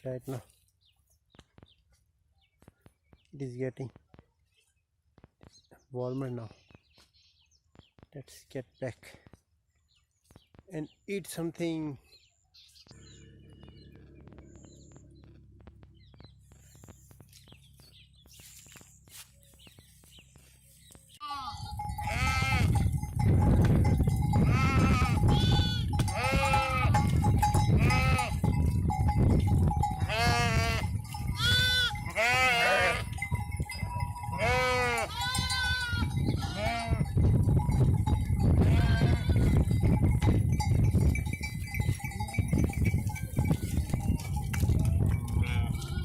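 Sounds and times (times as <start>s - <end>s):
low rumble: 13.0s - 17.8s
livestock bleating: 21.2s - 22.8s, 24.4s - 27.1s, 27.8s - 28.4s, 30.0s - 33.1s, 34.3s - 37.1s, 38.6s - 39.5s, 45.3s - 46.0s.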